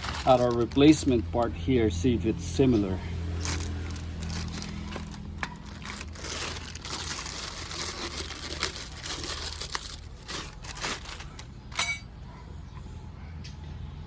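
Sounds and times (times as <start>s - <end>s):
plastic packaging crinkling: 0.0s - 1.6s, 3.3s - 12.0s.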